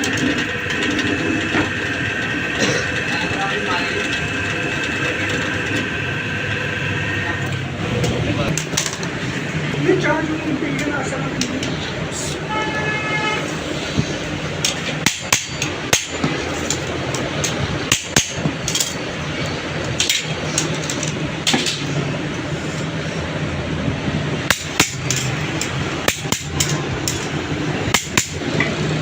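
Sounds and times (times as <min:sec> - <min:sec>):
steady background noise: 0:00.0 - 0:29.0
hammer striking metal: 0:14.6 - 0:16.8, 0:17.4 - 0:19.0, 0:24.5 - 0:27.3, 0:27.9 - 0:28.8.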